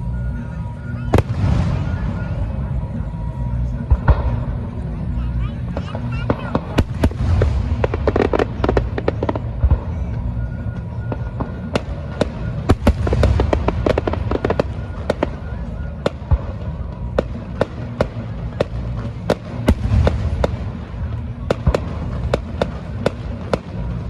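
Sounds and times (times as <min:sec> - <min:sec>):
fireworks bangs and crackles: 0:00.0 - 0:24.0
low rumble: 0:00.0 - 0:24.0.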